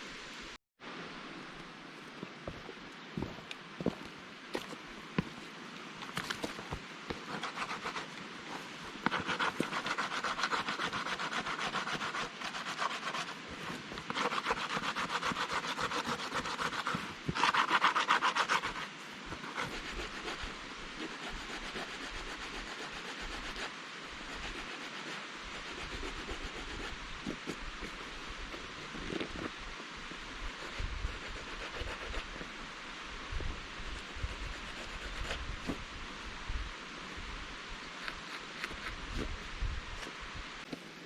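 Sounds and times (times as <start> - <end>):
soft steady hiss: 0.0 - 41.0
pumice stone scraping fur pelt: 6.2 - 23.6.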